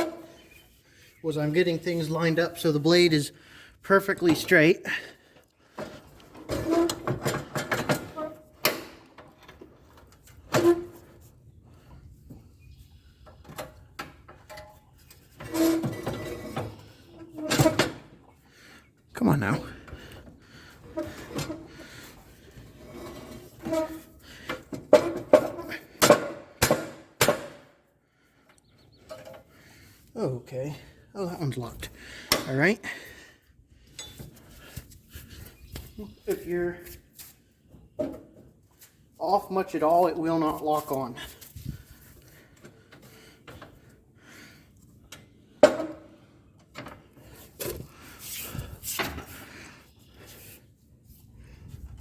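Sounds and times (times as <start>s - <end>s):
sharp metal clanks and knocks: 24.9s - 27.7s.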